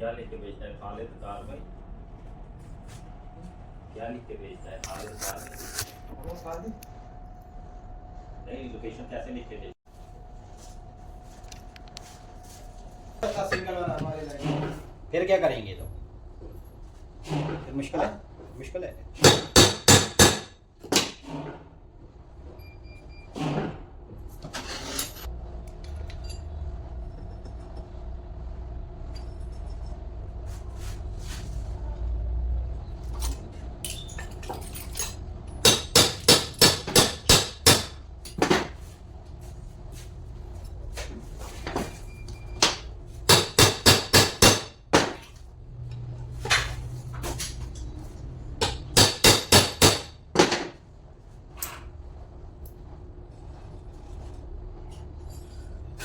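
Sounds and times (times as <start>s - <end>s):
hammer striking metal: 19.2s - 21.2s, 35.6s - 38.7s, 42.6s - 45.3s, 48.6s - 50.8s.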